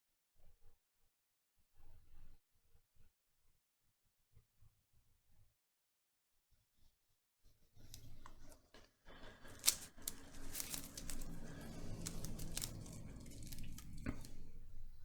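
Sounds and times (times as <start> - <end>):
adhesive strip scraping: 9.2 - 14.4.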